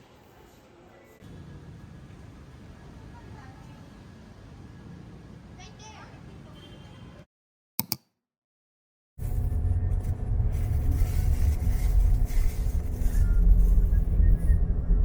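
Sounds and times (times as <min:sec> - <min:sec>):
short clicks: 0:07.8 - 0:08.1
vehicle rumbling on the move: 0:09.2 - 0:15.0.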